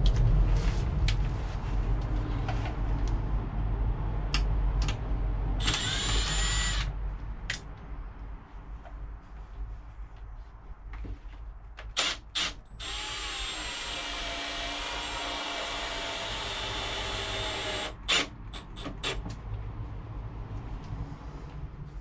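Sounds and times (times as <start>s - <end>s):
small power drill running: 5.6s - 6.9s, 12.0s - 18.3s.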